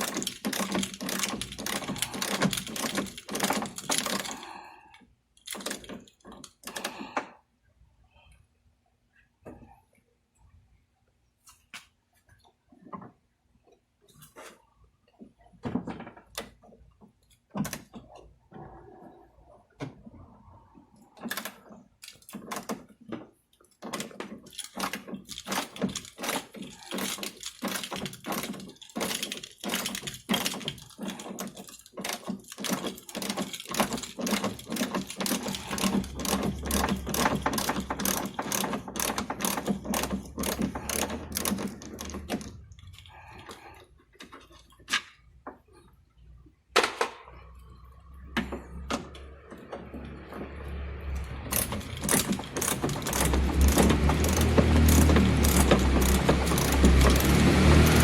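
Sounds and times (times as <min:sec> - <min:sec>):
hand ratchet clicking: 0:00.0 - 0:04.4, 0:24.5 - 0:43.1, 0:51.5 - 0:58.0.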